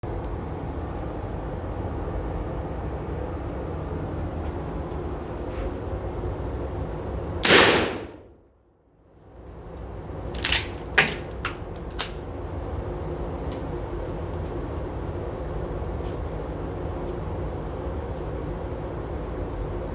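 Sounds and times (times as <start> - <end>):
rifle shot: 7.4 - 8.3.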